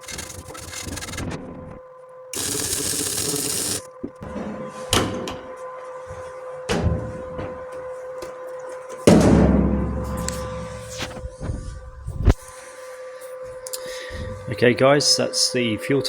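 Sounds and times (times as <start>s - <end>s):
welder hissing: 2.4s - 3.9s
heavy thump: 9.1s - 12.4s.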